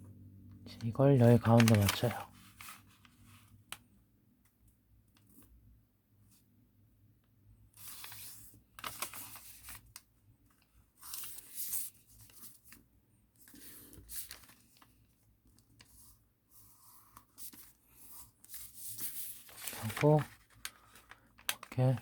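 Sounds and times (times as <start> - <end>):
paper rustling and crinkling: 1.3 - 3.6, 7.8 - 10.0, 11.0 - 12.8, 13.4 - 22.0.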